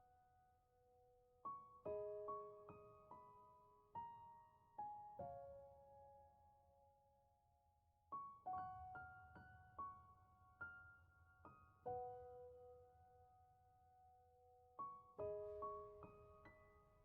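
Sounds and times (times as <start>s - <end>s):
quiet solo piano music: 0.0s - 17.0s.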